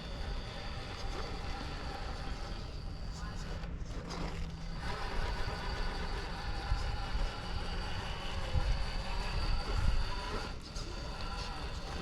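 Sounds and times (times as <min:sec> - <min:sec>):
electric motor and gears whining: 0:00.0 - 0:12.0
wind rumbling on microphone: 0:06.6 - 0:10.5.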